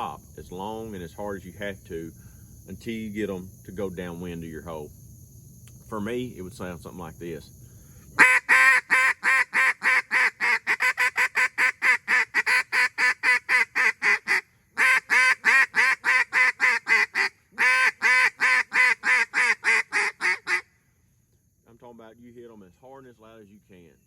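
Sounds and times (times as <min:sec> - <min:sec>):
duck call rapid quacks: 0:08.2 - 0:20.7.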